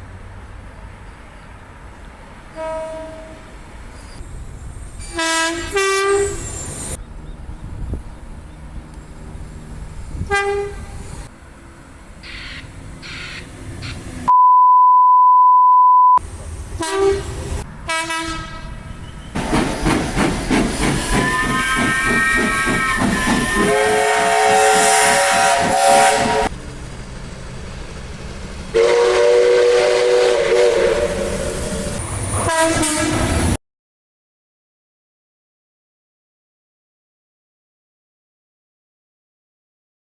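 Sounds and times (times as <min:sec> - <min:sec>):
passing train noise: 0:00.0 - 0:14.3, 0:16.2 - 0:33.6
train horn chord: 0:02.6 - 0:03.4, 0:05.1 - 0:06.4, 0:16.8 - 0:18.9, 0:21.2 - 0:26.5, 0:28.8 - 0:31.0, 0:32.5 - 0:33.3
electronic beep tone: 0:14.3 - 0:16.2.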